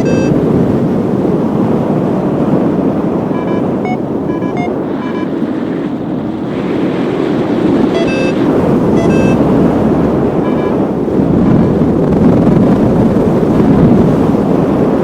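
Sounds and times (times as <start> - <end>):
short beeps: 0.0 - 0.4, 3.3 - 5.4, 7.9 - 8.4, 9.0 - 9.4, 10.4 - 10.8
wind on microphone: 0.0 - 15.0.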